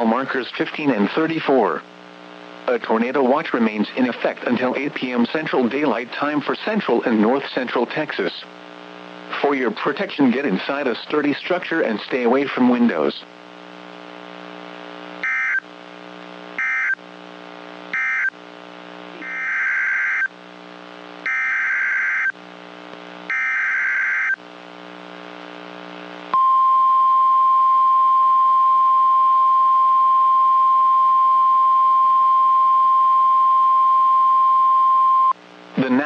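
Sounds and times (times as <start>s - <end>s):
faint radio hum: 0.0s - 21.3s, 22.4s - 23.3s, 24.4s - 26.3s, 35.4s - 36.0s
steady warning alarm tone: 15.2s - 15.6s, 16.6s - 17.0s, 18.0s - 18.3s, 19.2s - 20.3s, 21.3s - 22.3s, 23.3s - 24.4s
data bursts: 16.6s - 17.0s, 17.9s - 18.3s, 19.2s - 20.3s.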